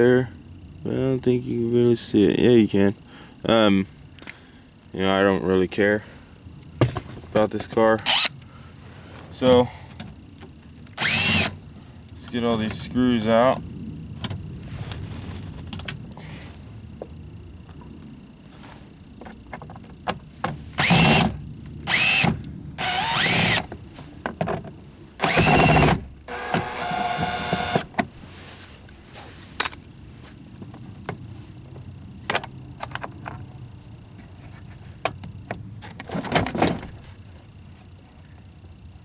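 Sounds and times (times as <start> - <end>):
buzzing rattling: 8.0 - 8.6, 10.8 - 11.7, 20.7 - 24.0, 25.2 - 28.0
cordless drill spinning: 8.1 - 8.3, 11.0 - 11.6, 20.8 - 23.7, 25.2 - 27.9.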